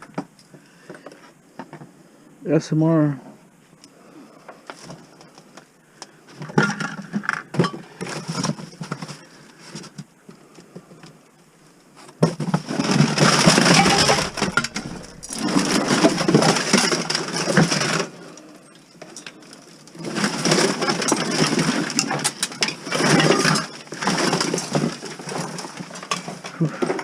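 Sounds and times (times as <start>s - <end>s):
rummaging through clutter: 6.3s - 11.0s, 11.9s - 27.0s.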